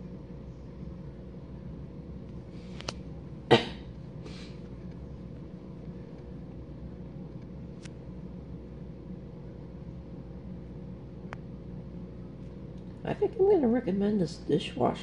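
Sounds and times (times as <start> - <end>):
dishwasher drain pump humming: 0.0 - 15.0
person coughing: 3.5 - 4.5.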